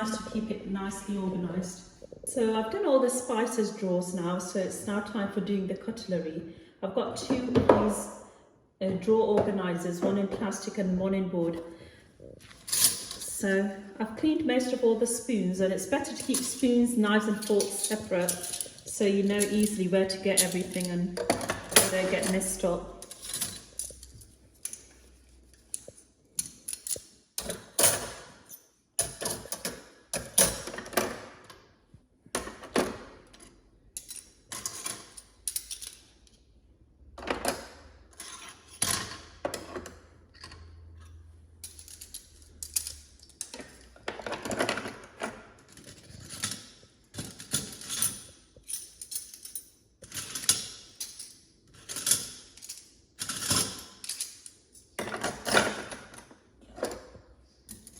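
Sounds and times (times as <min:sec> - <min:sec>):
metal cutlery clinking: 0:16.1 - 0:31.1.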